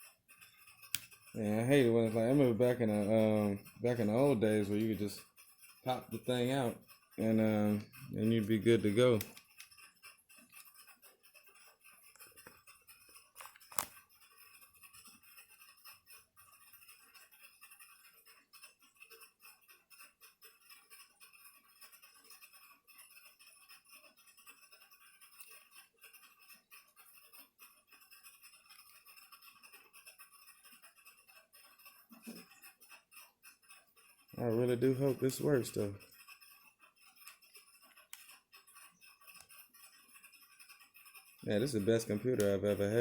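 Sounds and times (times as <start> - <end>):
hand tools clicking and scraping: 0.0 - 43.0.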